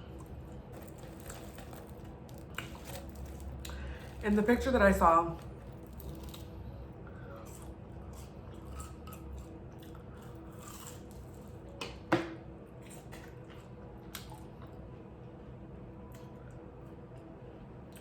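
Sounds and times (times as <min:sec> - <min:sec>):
person chewing food: 0:00.0 - 0:04.2, 0:05.4 - 0:11.5, 0:12.8 - 0:14.8.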